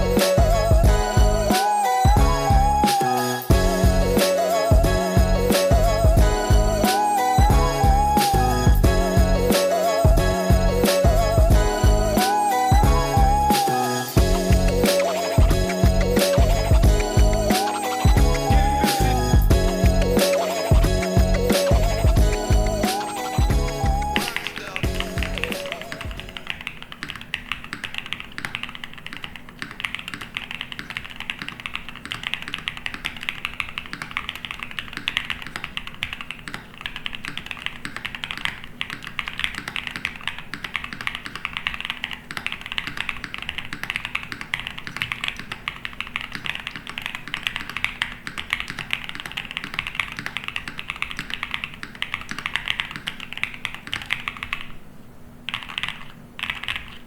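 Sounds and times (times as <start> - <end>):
fast mechanical keyboard typing: 22.2 - 54.8, 55.5 - 57.0.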